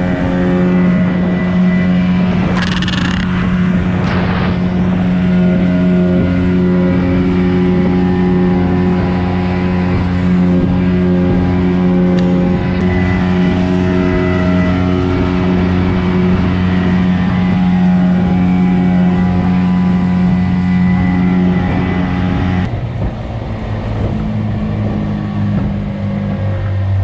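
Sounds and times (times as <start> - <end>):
boat motor running: 0.0 - 27.0.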